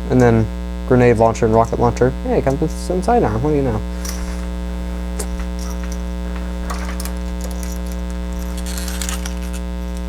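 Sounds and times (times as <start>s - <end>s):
electrical mains hum: 0.0s - 10.0s
faint light clicks and rustles: 3.9s - 10.0s.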